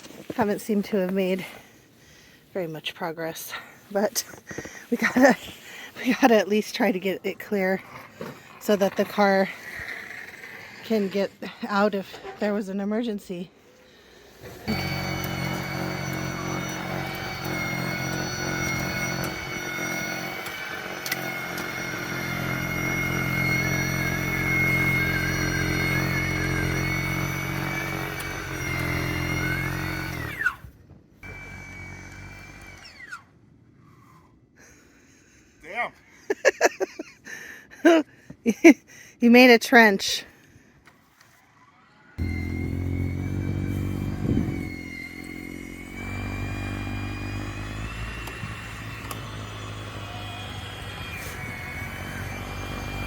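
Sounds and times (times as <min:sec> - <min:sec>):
snowblower engine running: 0:14.2 - 0:30.6, 0:31.2 - 0:33.1, 0:42.2 - 0:53.0
high whine: 0:42.2 - 0:47.1
high mechanical whine: 0:42.2 - 0:53.0.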